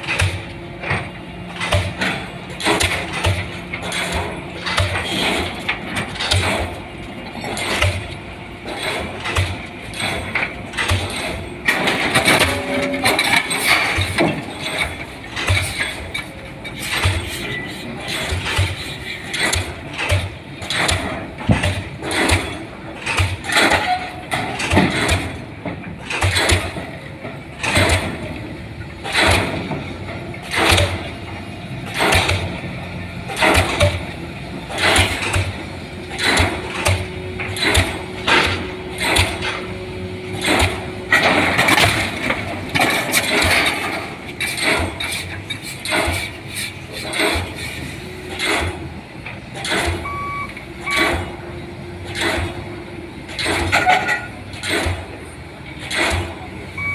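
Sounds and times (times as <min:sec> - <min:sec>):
pile hammer blows: 0:00.0 - 0:06.8, 0:07.4 - 0:56.9
engine running: 0:00.0 - 0:56.9.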